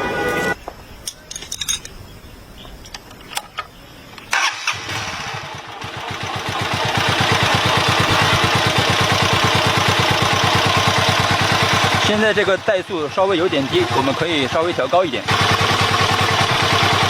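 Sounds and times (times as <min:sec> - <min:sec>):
motorcycle engine idling: 0:04.4 - 0:17.0.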